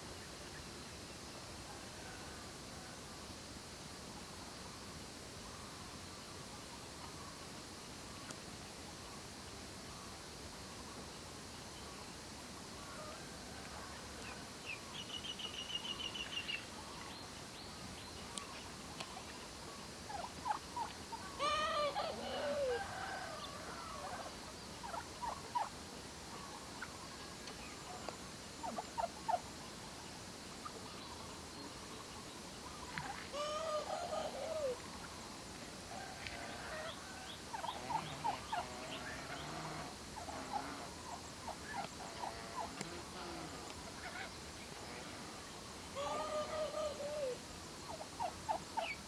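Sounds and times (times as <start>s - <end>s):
turkey clucks and peeps: 12.8s - 17.2s, 18.3s - 45.2s, 45.9s - 49.0s
turkey gobbling: 20.1s - 25.7s, 27.9s - 29.4s, 32.7s - 35.2s, 35.9s - 45.1s, 46.0s - 49.0s.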